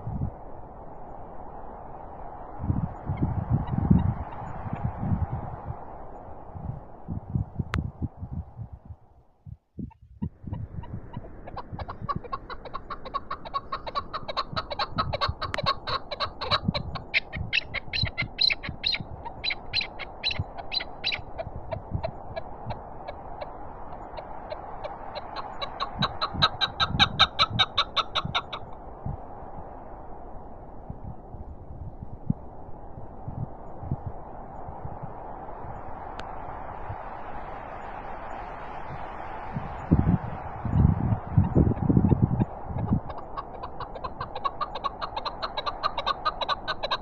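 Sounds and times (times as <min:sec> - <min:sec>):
wind noise with buffeting thumps: 0:00.0 - 0:47.0
partridge rapid clucking calls: 0:09.8 - 0:28.8, 0:40.6 - 0:47.0.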